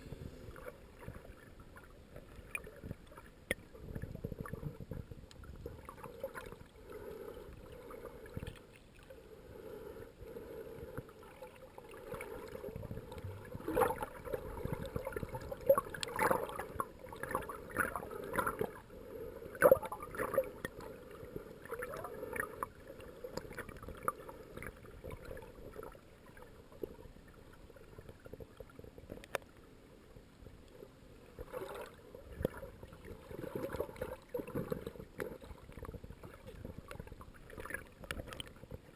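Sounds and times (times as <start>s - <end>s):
muffled underwater ambience: 0.0s - 38.9s
bubbling gurgles: 11.2s - 18.9s, 19.5s - 27.0s, 31.4s - 38.9s.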